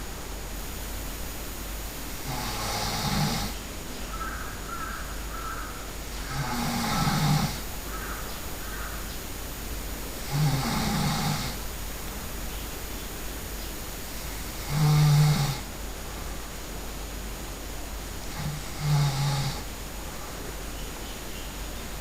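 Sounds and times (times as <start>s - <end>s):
person snoring loudly: 2.2s - 3.6s, 6.2s - 7.7s, 10.2s - 11.6s, 14.2s - 15.7s, 18.2s - 19.7s.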